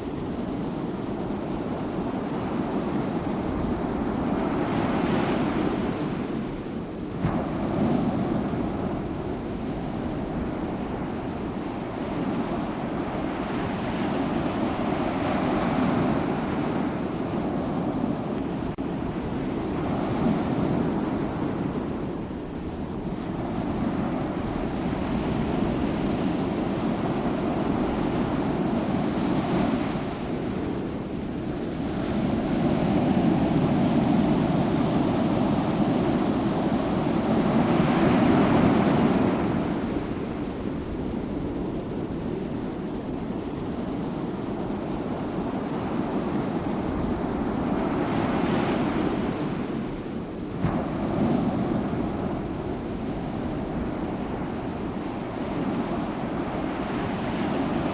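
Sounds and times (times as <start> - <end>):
sea waves breaking: 0.0 - 57.9.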